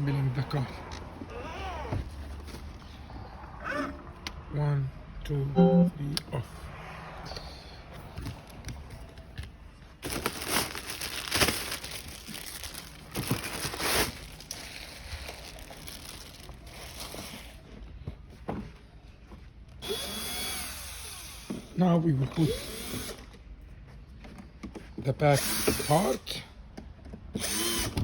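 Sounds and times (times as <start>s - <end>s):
plastic parts crinkling and rustling: 8.2s - 17.8s.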